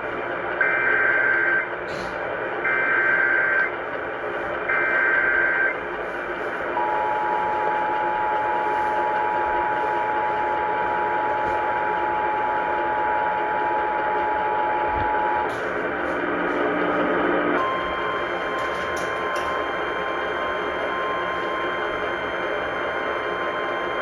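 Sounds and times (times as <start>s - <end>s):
two-tone alert signal: 2.6s - 3.7s, 17.6s - 24.0s.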